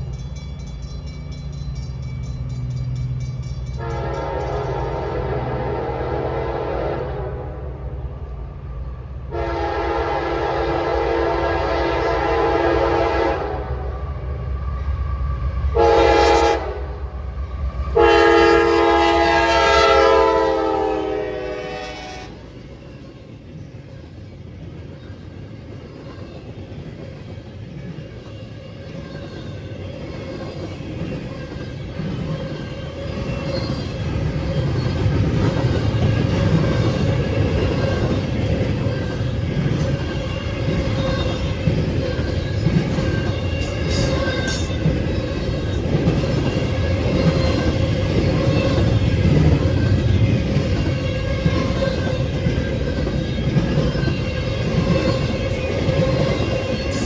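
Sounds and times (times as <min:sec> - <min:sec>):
train rumble: 0:00.0 - 0:57.0
locomotive horn blasts: 0:03.8 - 0:07.9, 0:09.3 - 0:14.1, 0:15.7 - 0:17.0, 0:18.0 - 0:22.4.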